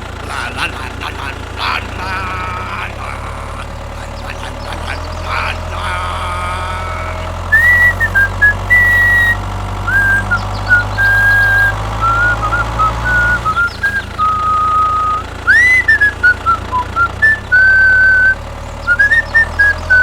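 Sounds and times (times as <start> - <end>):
low machine hum: 0.0 - 20.0
whistled tune: 7.5 - 20.0.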